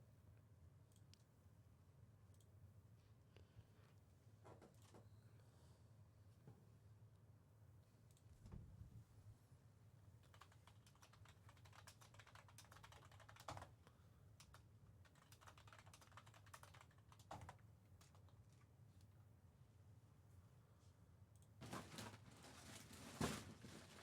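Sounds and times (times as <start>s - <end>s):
typing on computer keyboard: 10.2s - 18.6s.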